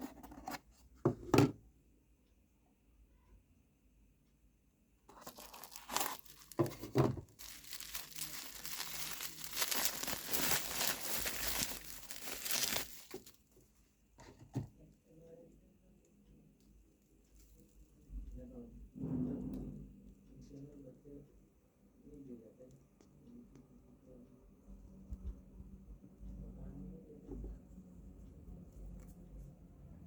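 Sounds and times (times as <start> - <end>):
packaging tearing and crinkling: 5.1 - 13.4.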